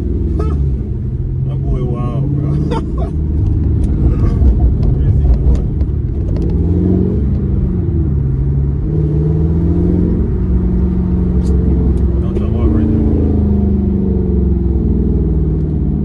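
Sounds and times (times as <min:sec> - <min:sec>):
car engine rumbling: 0:00.0 - 0:16.0
wind noise: 0:03.3 - 0:08.0.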